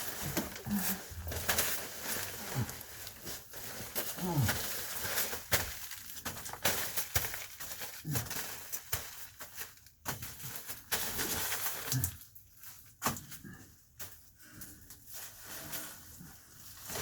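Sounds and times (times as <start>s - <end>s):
foil insulation crinkling: 0.0s - 17.0s.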